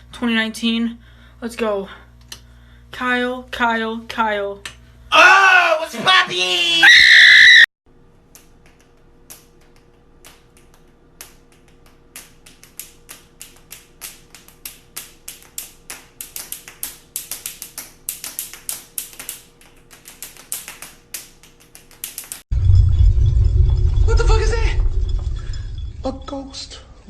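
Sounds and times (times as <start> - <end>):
faint steady hum: 0.0 - 5.2.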